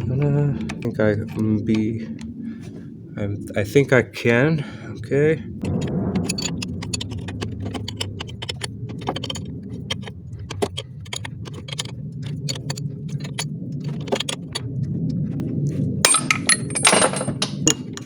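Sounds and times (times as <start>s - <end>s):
steady low hum: 0.0s - 18.0s
metallic clicks of hand tools: 5.6s - 14.6s.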